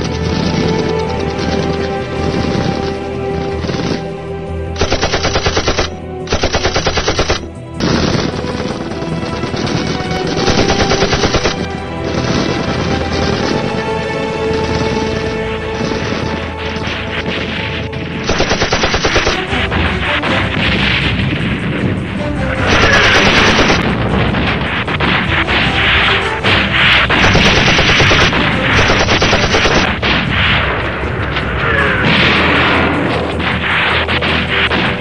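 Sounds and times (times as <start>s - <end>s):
background music: 0.0s - 35.0s
airsoft guns firing bursts: 4.8s - 13.8s, 18.2s - 19.5s, 22.7s - 23.8s, 27.1s - 30.2s.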